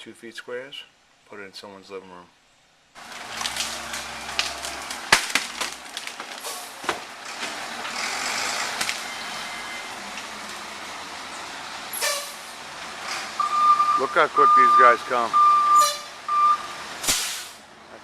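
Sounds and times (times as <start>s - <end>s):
heavy truck running: 3.0s - 18.0s
loud hiss: 17.0s - 17.7s.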